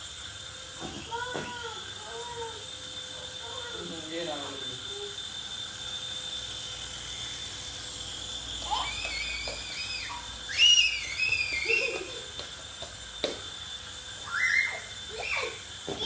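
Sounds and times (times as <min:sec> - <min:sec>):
wavering high-pitched whistles: 0:08.5 - 0:12.3, 0:14.2 - 0:15.7.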